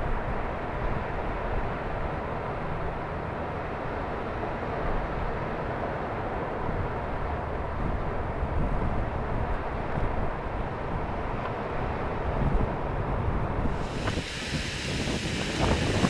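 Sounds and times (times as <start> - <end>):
low rumbling noise: 13.7 - 16.0.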